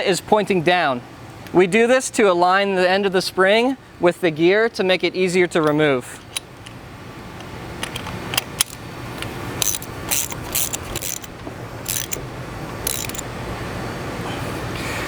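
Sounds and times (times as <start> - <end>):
steady low hum: 6.2 - 15.0
wrench clicking on metal: 7.8 - 12.2, 12.8 - 13.3.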